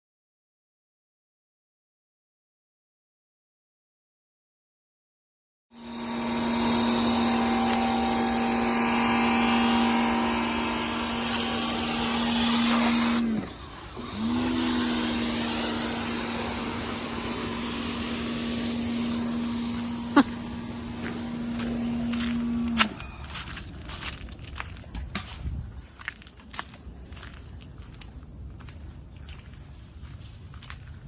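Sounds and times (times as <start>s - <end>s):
pressure washer motor: 5.7s - 24.6s
water spraying hiss: 7.0s - 23.0s.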